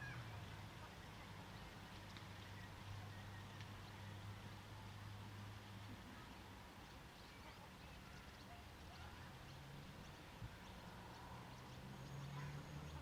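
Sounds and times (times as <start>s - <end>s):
distant traffic hum: 0.0s - 13.0s
faint bird chirps: 5.8s - 13.0s.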